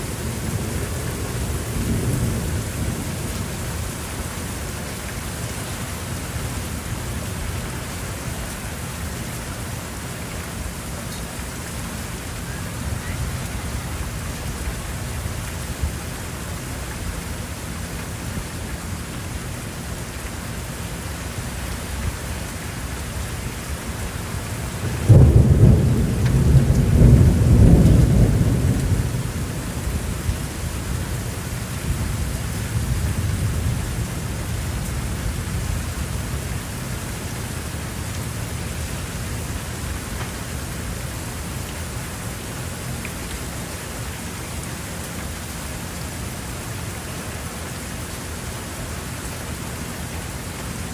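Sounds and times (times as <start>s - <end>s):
steady rain falling: 0.0s - 50.9s
thunder clap rumbling: 24.8s - 31.0s.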